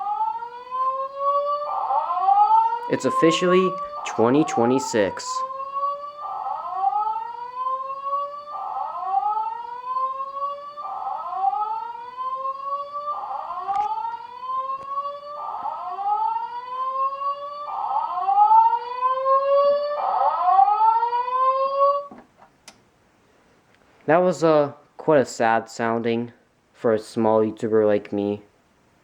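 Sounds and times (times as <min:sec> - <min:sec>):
fire alarm rising whoop tone: 0:00.0 - 0:22.1.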